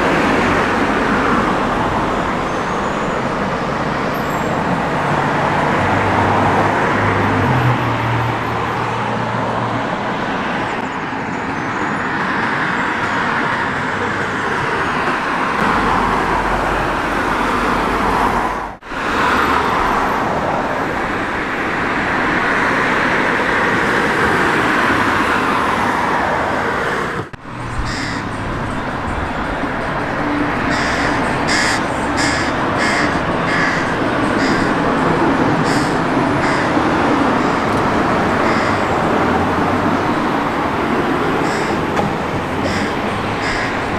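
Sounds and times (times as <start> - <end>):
road traffic: 0.0 - 43.9
crow cawing: 27.6 - 43.9.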